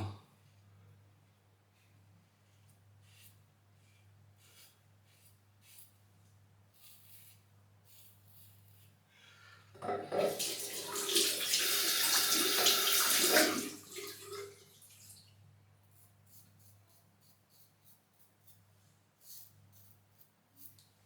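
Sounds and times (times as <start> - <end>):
faint scratching strokes: 1.2 - 9.5, 15.8 - 21.0
tap running into sink: 9.8 - 14.4.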